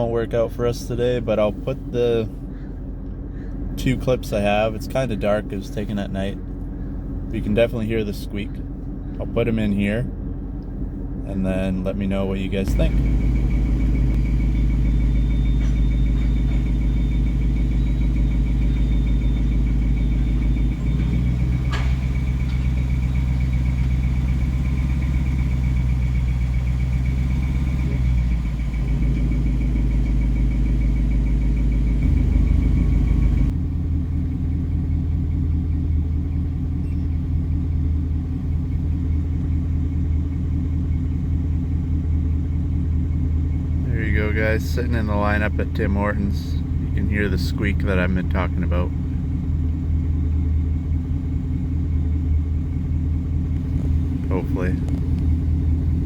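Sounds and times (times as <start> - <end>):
car engine exhaust rumble: 0.0 - 56.0
high-pitched engine squeak: 12.6 - 33.6, 35.3 - 37.8.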